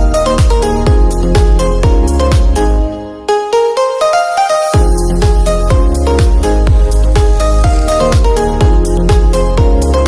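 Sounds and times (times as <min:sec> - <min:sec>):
electronic dance music: 0:04.8 - 0:08.9.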